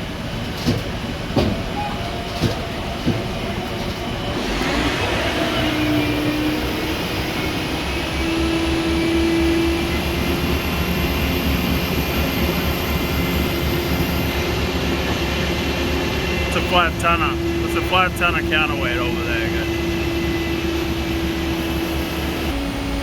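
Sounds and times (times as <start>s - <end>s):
heavy engines rumbling: 0.0s - 23.0s
humming tone: 18.7s - 23.0s.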